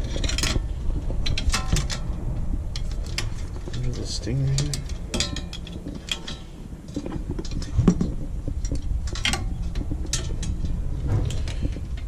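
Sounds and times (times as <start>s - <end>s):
metal hardware clinking: 3.1s - 6.5s.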